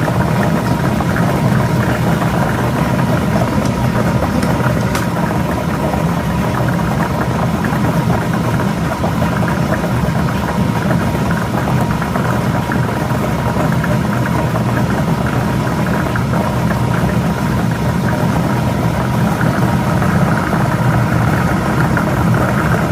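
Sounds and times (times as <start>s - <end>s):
lottery machine motor whirring: 0.0s - 7.4s.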